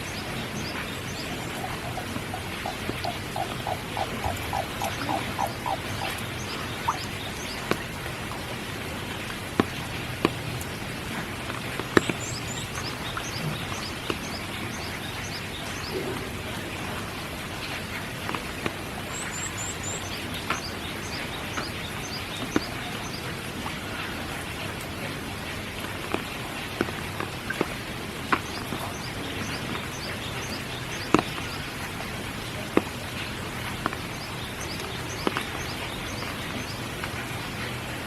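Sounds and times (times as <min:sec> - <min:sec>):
songbird chirping: 0:00.0 - 0:08.6, 0:11.5 - 0:23.4, 0:28.3 - 0:38.0
rain falling: 0:00.0 - 0:38.0
raindrops striking surfaces: 0:00.0 - 0:38.0.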